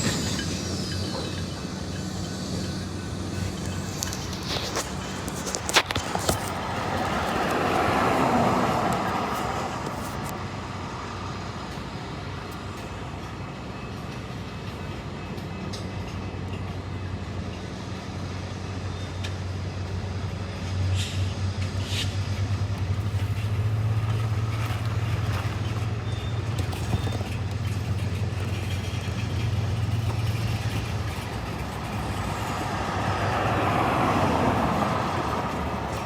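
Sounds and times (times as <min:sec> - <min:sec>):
rushing noise: 0:00.0 - 0:11.6
diesel locomotive engine drone: 0:00.0 - 0:36.0.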